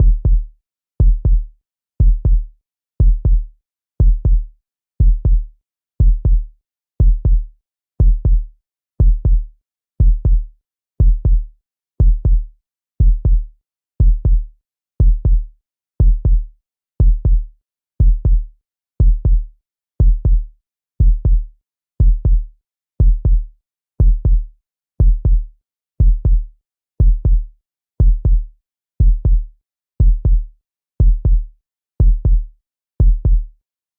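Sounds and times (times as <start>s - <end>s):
heartbeat double thump: 0.0s - 0.4s.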